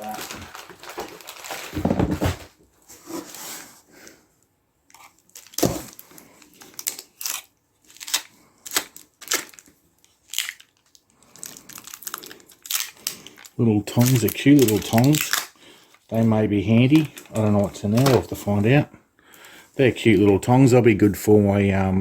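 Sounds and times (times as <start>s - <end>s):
plastic crinkling and tearing: 0.0s - 2.5s, 4.9s - 18.7s.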